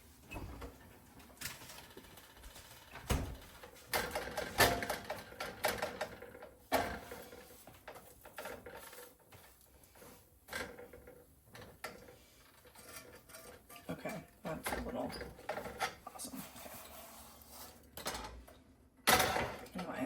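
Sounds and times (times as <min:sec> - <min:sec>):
metal spatula scraping frying pan: 0:12.4 - 0:14.3, 0:15.2 - 0:17.9.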